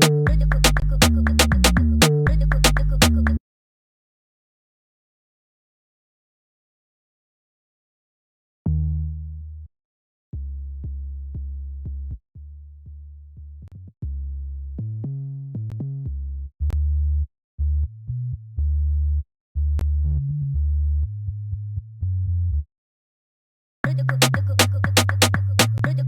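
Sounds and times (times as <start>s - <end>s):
synth bass notes: 0.0s - 3.4s.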